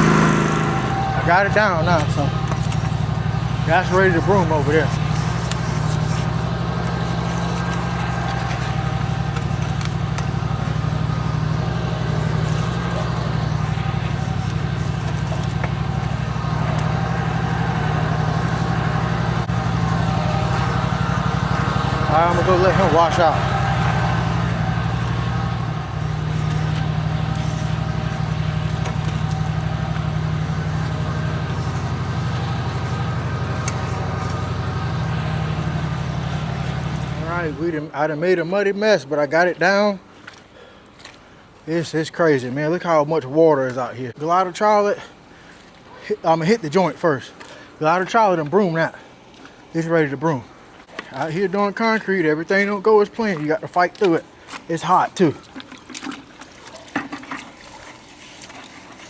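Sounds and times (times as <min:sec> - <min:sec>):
engine idling: 0:00.0 - 0:38.1.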